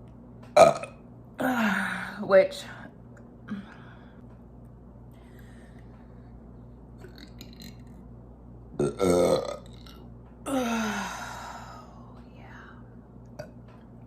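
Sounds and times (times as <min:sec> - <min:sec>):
woman burping: 0:00.6 - 0:02.0, 0:08.8 - 0:11.3.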